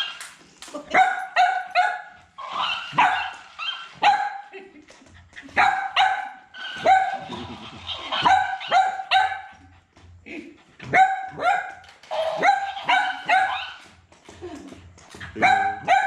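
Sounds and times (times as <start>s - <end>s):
puppy yapping: 0.0s - 4.5s, 5.6s - 9.6s, 10.8s - 14.0s, 15.2s - 16.0s.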